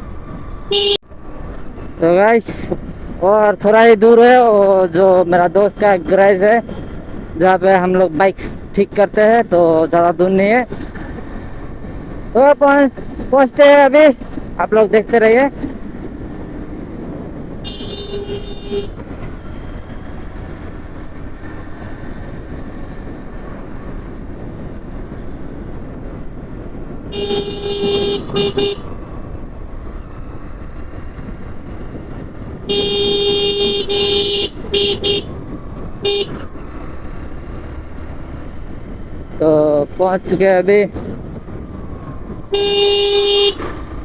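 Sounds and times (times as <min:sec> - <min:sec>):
wind noise: 0:00.0 - 0:44.0
vehicle horn honking: 0:00.7 - 0:01.0, 0:17.6 - 0:19.0, 0:27.1 - 0:28.9, 0:32.7 - 0:35.4, 0:36.0 - 0:36.4, 0:42.5 - 0:43.7
motorcycle engine: 0:26.9 - 0:39.7.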